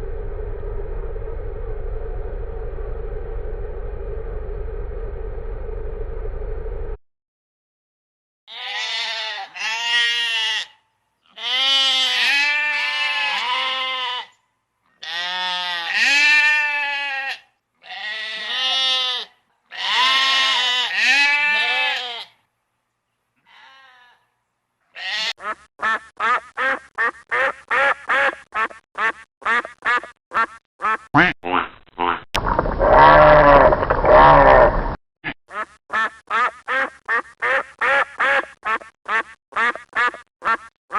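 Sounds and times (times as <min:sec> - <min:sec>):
animal bleating: 0:08.5 - 0:14.4, 0:15.0 - 0:22.4, 0:23.4 - 0:25.5, 0:32.9 - 0:34.7
duck quacking: 0:25.0 - 0:32.2, 0:35.5 - 0:40.7.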